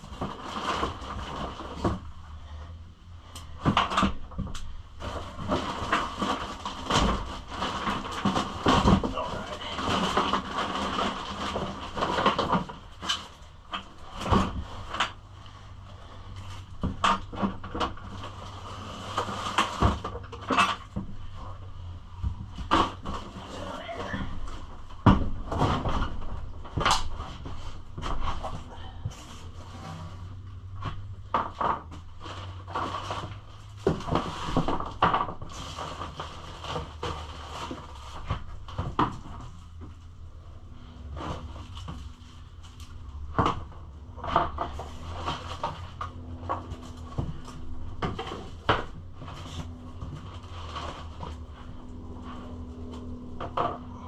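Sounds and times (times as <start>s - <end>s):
low steady hum: 0.0s - 54.0s
plastic panels knocking and clattering: 3.4s - 15.3s, 16.7s - 21.6s, 22.2s - 23.6s, 24.2s - 28.7s, 30.7s - 40.0s, 43.2s - 51.6s.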